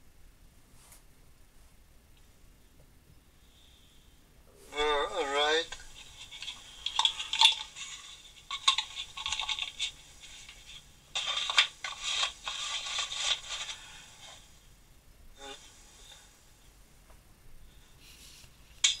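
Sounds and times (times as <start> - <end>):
metal tools clinking and scraping: 5.9 - 13.8.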